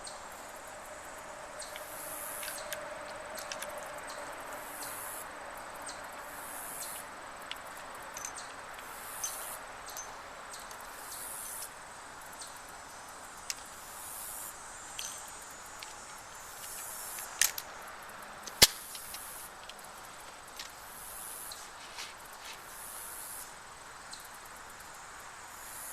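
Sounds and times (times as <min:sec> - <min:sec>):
insects chirping in pulses: 0:00.0 - 0:25.9
steady outdoor hiss: 0:00.0 - 0:25.9
small clicks: 0:03.4 - 0:03.8.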